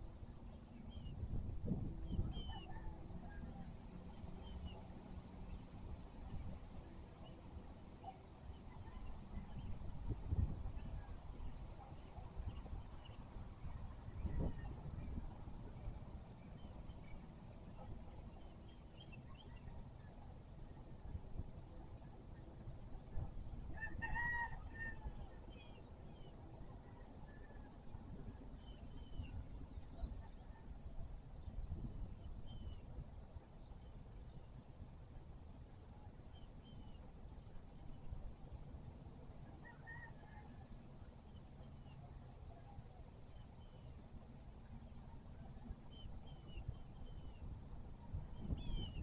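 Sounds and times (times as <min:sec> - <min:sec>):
rooster crowing: 0:23.8 - 0:25.2
high insect drone: 0:40.6 - 0:49.0.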